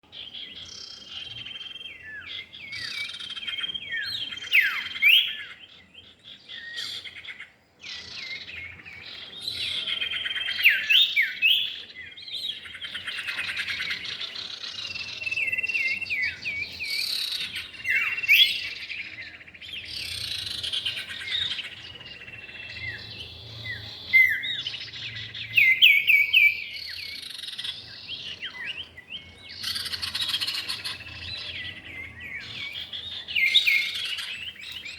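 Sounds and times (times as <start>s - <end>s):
bird whistles chirps and chattering: 0.7s - 5.6s, 9.4s - 19.2s, 19.8s - 31.8s, 32.4s - 34.9s.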